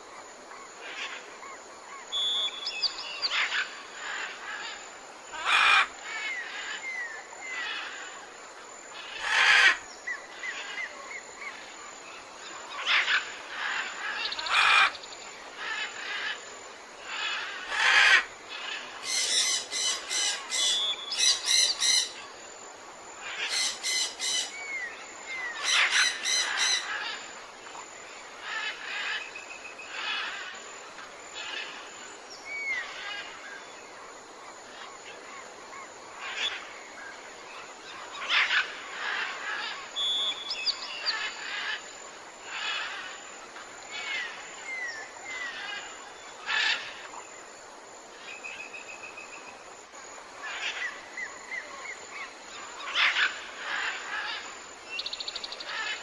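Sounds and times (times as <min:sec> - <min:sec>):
faint steady hiss: 0:00.0 - 0:56.0
birds calling and chirping: 0:00.8 - 0:08.0, 0:17.1 - 0:22.4, 0:23.2 - 0:30.6, 0:34.6 - 0:43.2.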